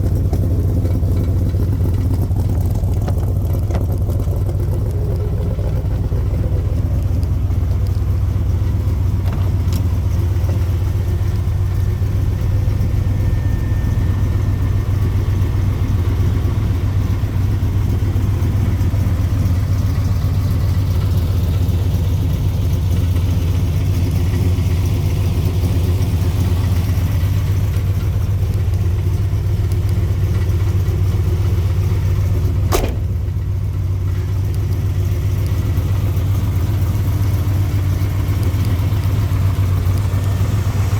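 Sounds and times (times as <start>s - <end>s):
engine idling with deep rumble: 0.0s - 40.9s
sharp click: 32.7s - 33.1s.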